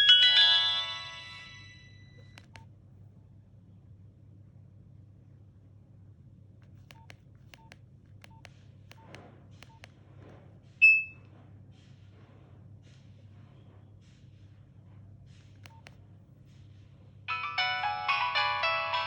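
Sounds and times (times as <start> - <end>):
phone key beeps: 6.8 - 9.9, 10.8 - 11.2, 15.6 - 16.0
loud high-pitched beep: 10.8 - 11.2.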